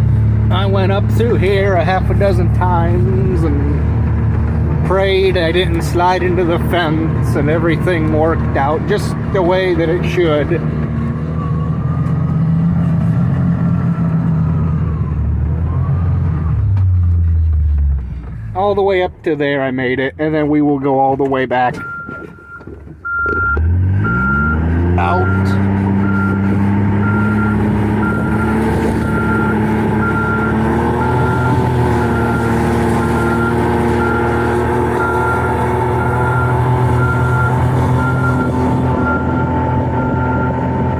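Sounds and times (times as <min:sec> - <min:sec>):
vehicle engine running: 0:00.0 - 0:21.2, 0:21.9 - 0:40.9
backup alarm beeping: 0:21.7 - 0:40.6.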